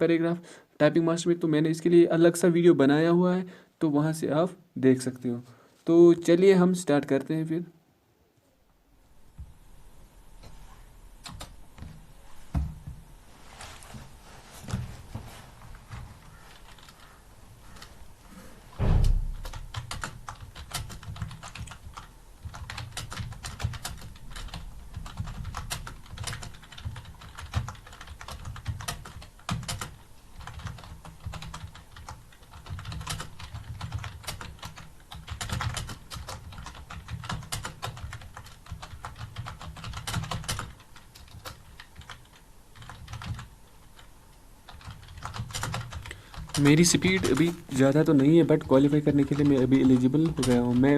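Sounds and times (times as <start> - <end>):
fast typing on keyboard: 11.2 - 12.0, 15.9 - 18.0, 19.4 - 50.9.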